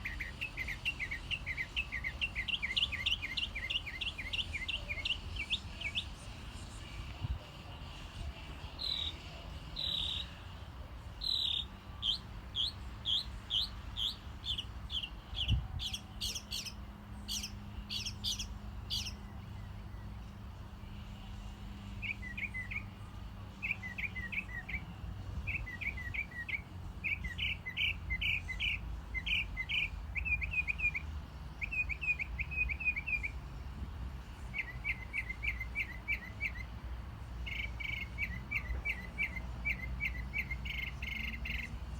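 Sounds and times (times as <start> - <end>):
songbird singing: 0.0 - 41.9.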